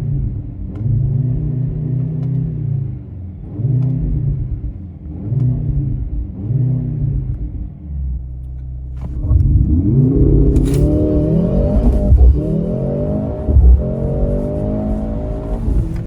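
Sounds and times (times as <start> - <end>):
car engine revving: 8.9 - 16.0
sharp exhaust crack: 10.0 - 16.0.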